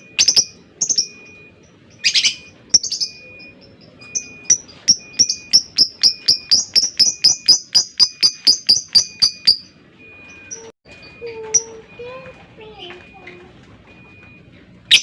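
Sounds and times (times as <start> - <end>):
lovebird high chirps: 0.0 - 9.7.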